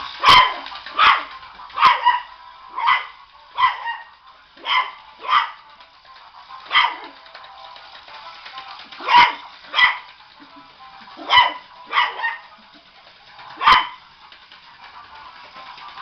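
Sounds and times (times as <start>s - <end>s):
music playing: 0.0s - 16.0s
small dog barking: 0.2s - 5.6s, 9.0s - 10.0s, 11.2s - 12.4s, 13.6s - 14.0s.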